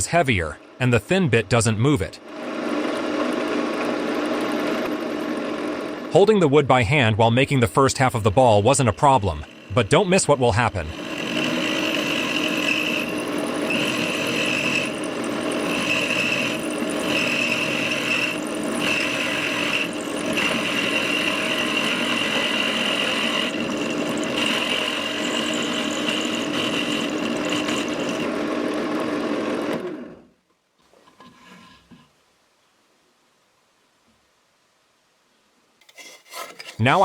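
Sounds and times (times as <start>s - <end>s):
drill press whining: 8.7s - 10.0s, 10.6s - 28.8s.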